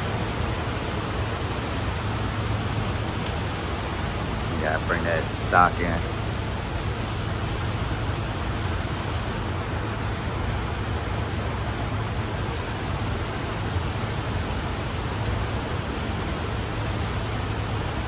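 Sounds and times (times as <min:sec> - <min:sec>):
low hum: 0:00.0 - 0:11.8
steady rushing noise: 0:00.0 - 0:13.7.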